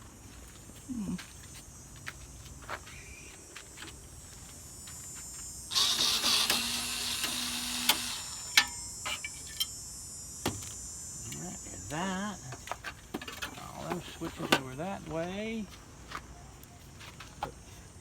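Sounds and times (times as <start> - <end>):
handheld power tool whirring: 5.6 - 9.8.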